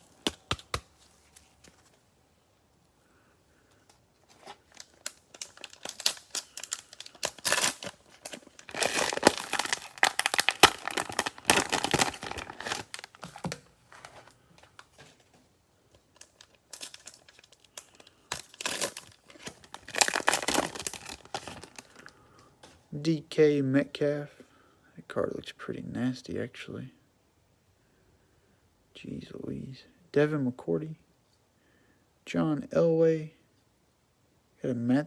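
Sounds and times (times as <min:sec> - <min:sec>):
cellophane wrapper tearing and crinkling: 0:04.3 - 0:14.2, 0:16.1 - 0:22.1.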